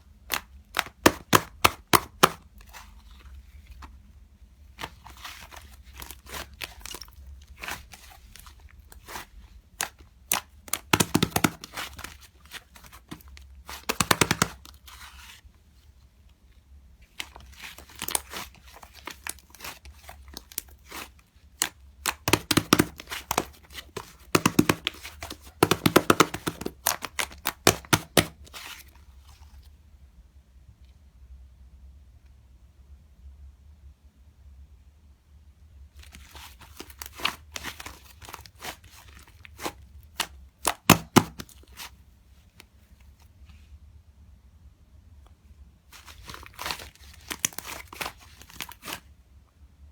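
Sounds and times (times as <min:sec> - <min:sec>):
slime popping and crackling: 0:00.3 - 0:02.4, 0:09.0 - 0:15.0, 0:17.2 - 0:28.7, 0:37.0 - 0:41.9.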